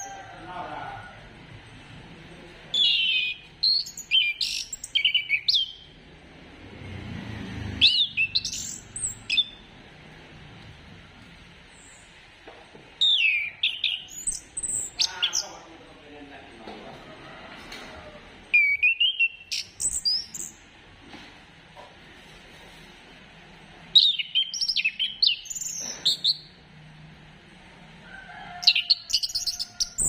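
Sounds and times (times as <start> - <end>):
bird singing whistled phrases: 2.8 - 5.8, 7.8 - 9.6, 13.0 - 15.5, 18.5 - 20.6, 24.0 - 26.5.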